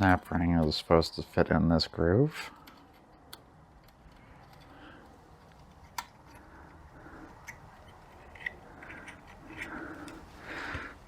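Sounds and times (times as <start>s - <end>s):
metal parts clicking and tapping: 7.4s - 10.2s.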